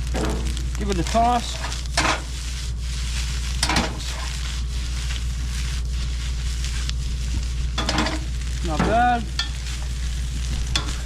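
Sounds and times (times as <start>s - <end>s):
faint stirring scrapes: 0.0s - 11.0s
rice sizzling in a hot pan: 0.0s - 11.0s
steady low rumble: 0.0s - 11.0s.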